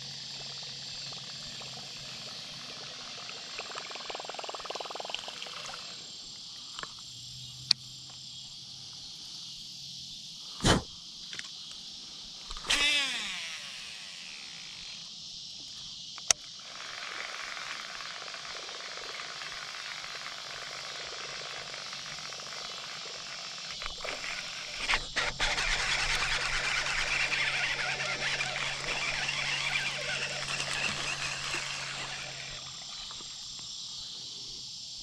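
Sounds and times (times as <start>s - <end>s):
crickets and insects buzzing: 0.0s - 35.0s
whirr dropping in pitch: 12.6s - 15.0s, 23.8s - 33.2s
sharp clicks: 23.8s - 33.3s.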